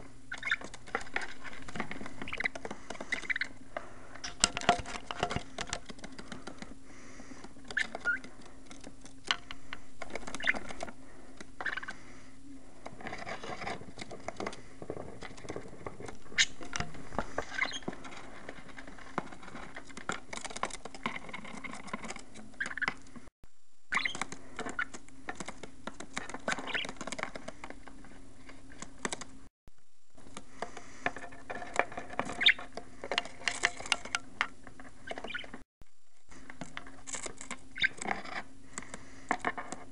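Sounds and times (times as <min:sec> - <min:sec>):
steady low hum: 0:00.0 - 0:39.9
birds scratching and clicking: 0:00.2 - 0:12.1, 0:12.8 - 0:23.3, 0:23.9 - 0:29.4, 0:30.2 - 0:35.6, 0:36.3 - 0:39.9
budgies chirping: 0:00.3 - 0:00.8, 0:02.1 - 0:03.6, 0:07.0 - 0:08.3, 0:10.2 - 0:10.8, 0:11.6 - 0:12.2, 0:16.4 - 0:16.6, 0:17.2 - 0:18.0, 0:22.6 - 0:23.0, 0:23.9 - 0:25.0, 0:26.5 - 0:27.0, 0:32.3 - 0:32.7, 0:35.0 - 0:35.6, 0:37.7 - 0:38.0.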